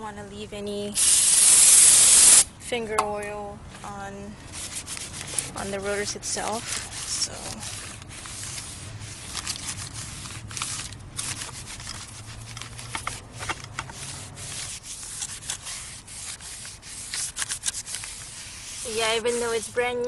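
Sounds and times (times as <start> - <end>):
rubbing brake rotor by hand: 4.5 - 19.8.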